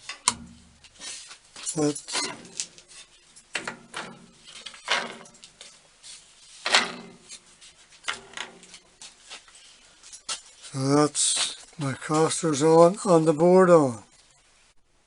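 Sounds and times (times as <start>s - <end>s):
metal drawers scraping and knocking: 1.7s - 5.7s, 6.6s - 8.9s.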